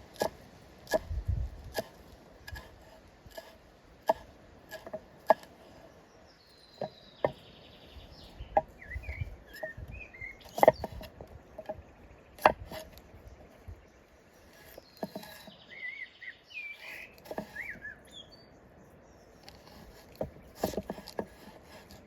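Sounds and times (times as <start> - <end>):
blade chopping wood: 0.0 - 5.7, 10.5 - 11.8, 12.4 - 13.0, 14.6 - 15.6, 16.8 - 17.6, 19.5 - 22.0
bird chirping: 5.4 - 21.2.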